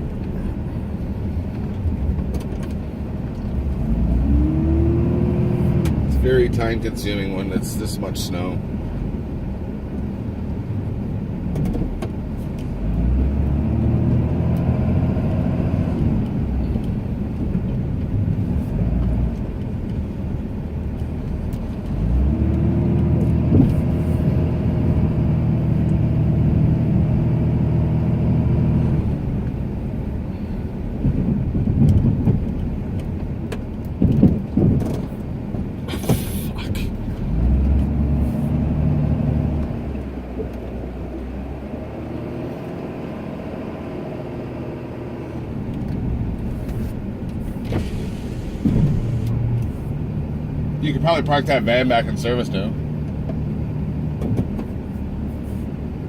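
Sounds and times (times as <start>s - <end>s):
pickup engine working under load: 34.4s - 56.0s.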